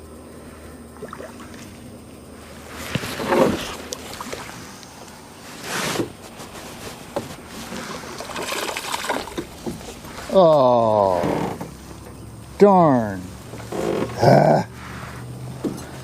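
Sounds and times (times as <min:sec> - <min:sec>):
water splashing beside a boat: 0:00.9 - 0:12.2.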